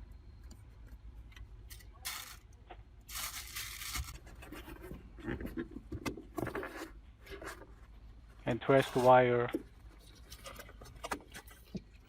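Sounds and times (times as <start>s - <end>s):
tape tearing and scraping: 1.7s - 2.4s, 3.1s - 4.2s.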